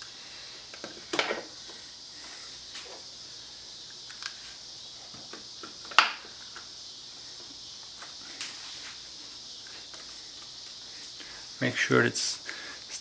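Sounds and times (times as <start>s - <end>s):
steady background hiss: 0.0s - 13.0s.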